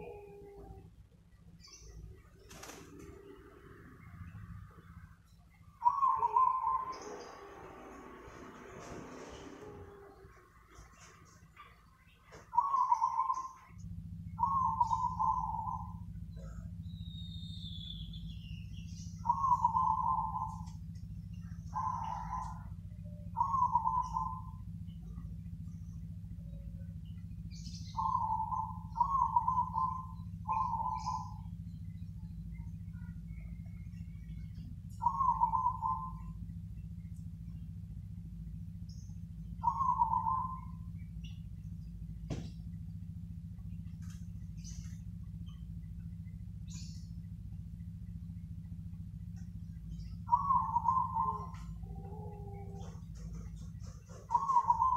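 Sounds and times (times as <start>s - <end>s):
dove trilled cooing: 0.0s - 1.0s, 5.8s - 16.8s, 18.8s - 37.6s, 38.7s - 42.5s, 49.8s - 54.9s
steady low hum: 0.0s - 54.9s.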